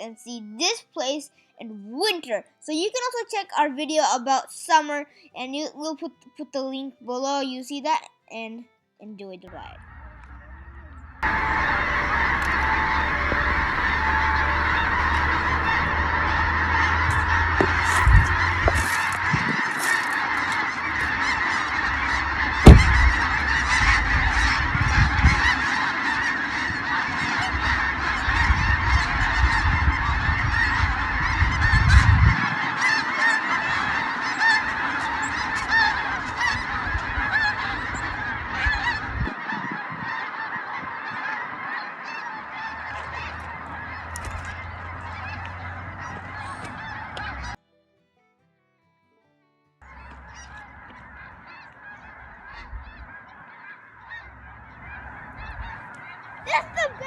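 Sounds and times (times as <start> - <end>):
low rumble: 9.5 - 19.4, 20.8 - 25.5
flock of birds calling: 9.5 - 47.6, 49.8 - 57.0
sharp thump: 22.6 - 23.1.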